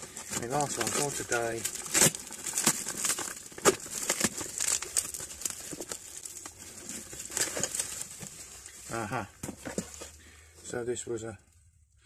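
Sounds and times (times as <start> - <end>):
packaging crumpling and tearing: 0.0 - 10.2.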